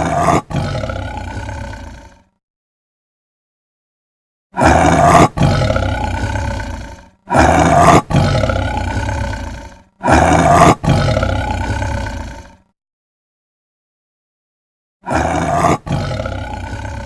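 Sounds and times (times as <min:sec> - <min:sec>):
large animal roaring: 0:00.0 - 0:02.4, 0:04.6 - 0:12.7, 0:15.0 - 0:17.0.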